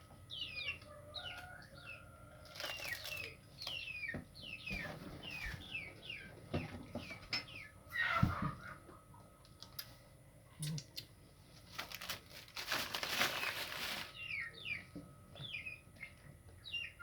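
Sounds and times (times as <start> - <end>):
small birds chirping: 0.0 - 8.8, 13.3 - 17.0.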